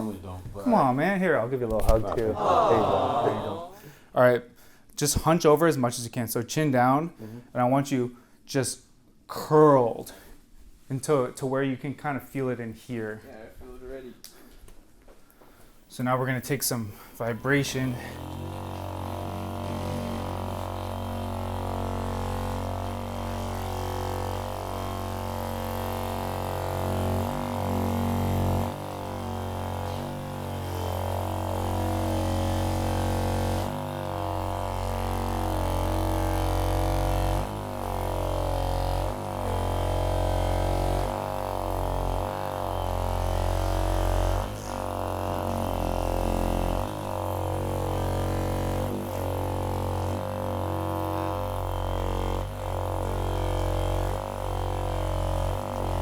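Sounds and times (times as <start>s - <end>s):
massage gun buzzing: 17.3s - 56.0s.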